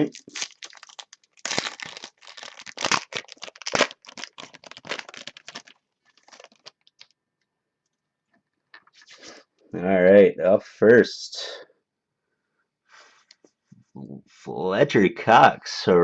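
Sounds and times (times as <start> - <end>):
wrapper tearing and crinkling: 0.0 - 7.2.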